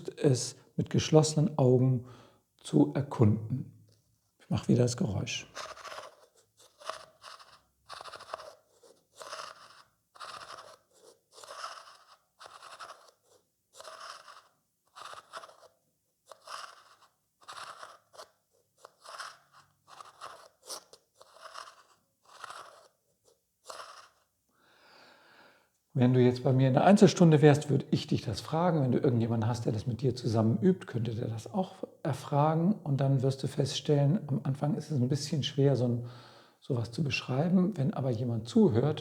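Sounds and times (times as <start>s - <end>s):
spoon rasping over a vase: 5.5s - 15.7s, 16.3s - 23.0s.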